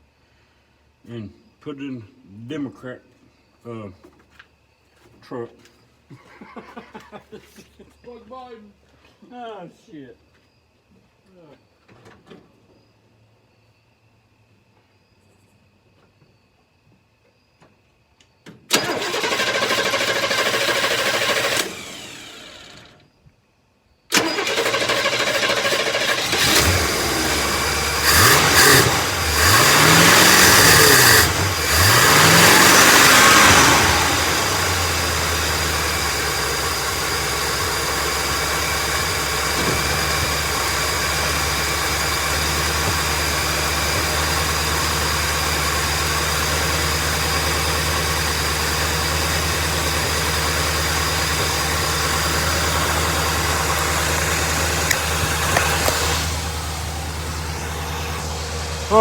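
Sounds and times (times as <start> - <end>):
truck engine cranking and revving: 18.7 - 23.0, 24.1 - 59.0.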